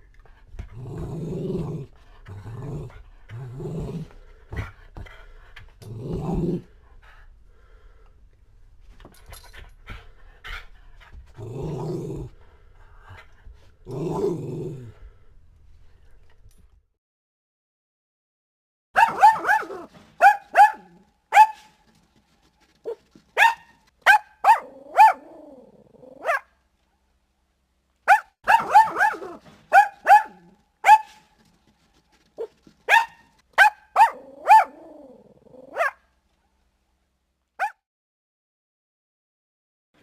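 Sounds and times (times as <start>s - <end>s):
dog barking: 19.0s - 21.7s, 23.4s - 25.3s, 26.2s - 26.5s, 28.1s - 31.3s, 32.4s - 34.8s, 35.7s - 36.1s, 37.6s - 37.8s.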